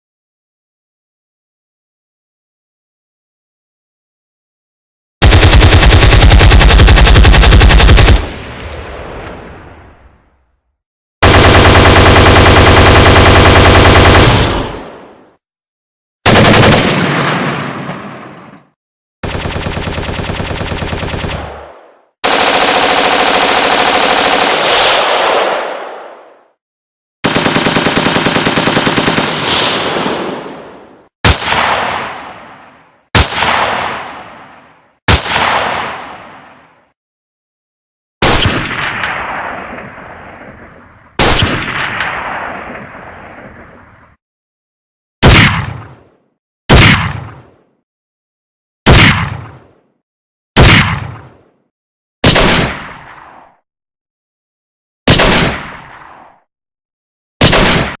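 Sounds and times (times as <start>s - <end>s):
automatic gunfire bursts: 5.2s - 8.3s, 11.2s - 14.8s, 16.3s - 17.2s, 19.2s - 21.4s, 22.2s - 24.7s, 27.2s - 29.4s
single loud gunshots: 45.2s - 46.0s, 46.7s - 47.5s, 48.9s - 49.7s, 50.6s - 51.4s, 52.2s - 53.3s, 55.1s - 56.2s, 57.4s - 58.0s.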